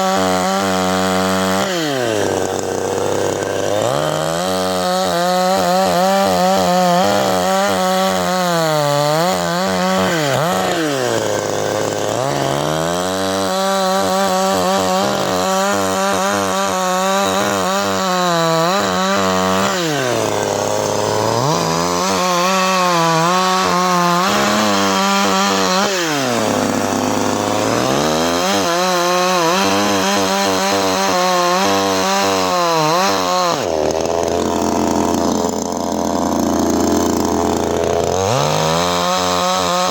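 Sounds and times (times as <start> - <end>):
chainsaw revving and idling: 0.0 - 39.9.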